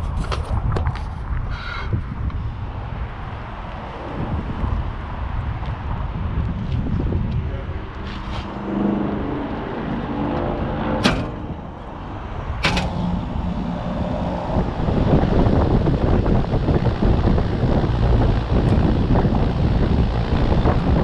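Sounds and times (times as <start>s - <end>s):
air rushing over microphone: 0.0s - 21.0s
air conditioner hum: 11.0s - 21.0s.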